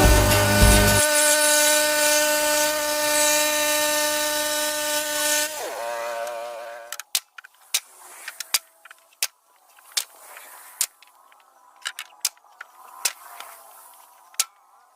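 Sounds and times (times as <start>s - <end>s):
band sawmill running: 0.0s - 7.0s.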